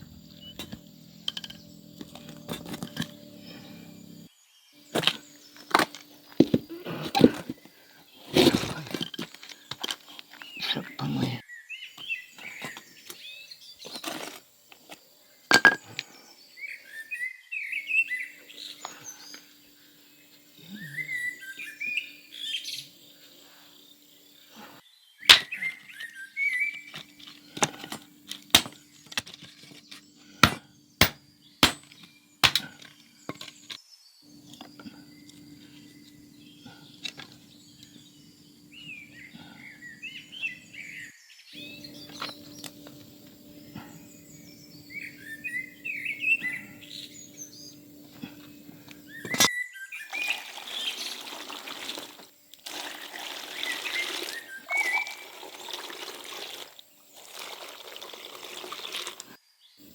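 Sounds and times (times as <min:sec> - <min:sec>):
faint steady hum: 0:00.0 - 0:08.0, 0:34.3 - 0:41.0, 0:41.6 - 0:49.5
small birds chirping: 0:00.0 - 0:59.9.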